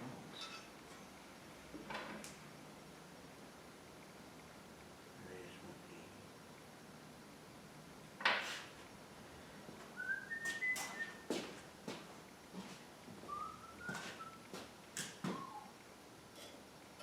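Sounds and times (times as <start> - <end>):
person whistling: 10.0 - 11.3, 13.3 - 14.4, 15.3 - 15.8.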